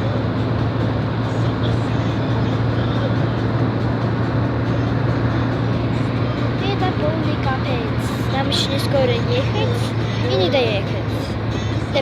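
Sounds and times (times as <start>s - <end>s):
road and engine noise in car: 0.0s - 12.0s.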